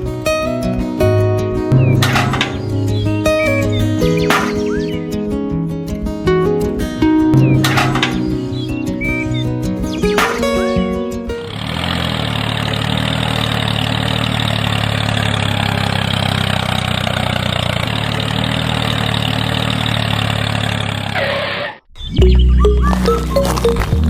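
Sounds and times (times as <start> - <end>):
small engine idling: 1.7 - 5.0, 7.4 - 21.7.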